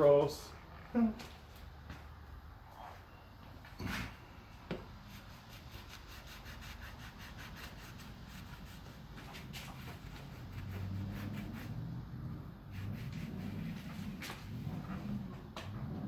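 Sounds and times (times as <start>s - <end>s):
quick scrubbing strokes: 5.1s - 11.9s, 12.7s - 14.6s.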